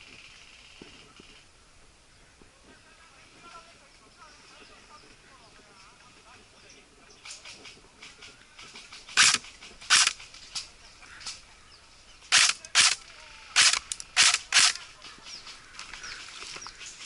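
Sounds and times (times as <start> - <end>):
airsoft gun shots: 9.1 - 10.2, 12.3 - 13.0, 13.6 - 14.8.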